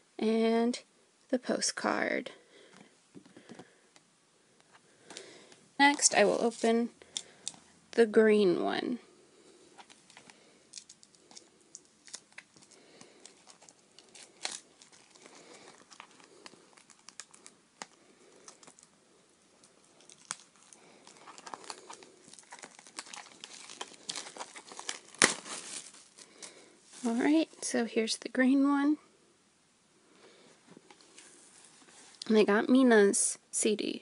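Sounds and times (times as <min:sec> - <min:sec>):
plastic wrapping crackling: 0:05.1 - 0:07.6, 0:09.7 - 0:27.7.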